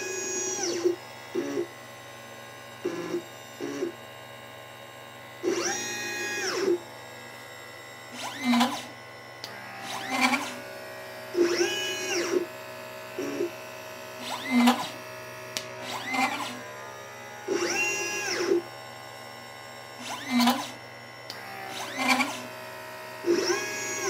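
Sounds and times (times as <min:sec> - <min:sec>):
stepper motors whining: 0:00.0 - 0:01.7, 0:02.8 - 0:04.0, 0:05.4 - 0:06.9, 0:08.0 - 0:18.8, 0:20.0 - 0:24.0.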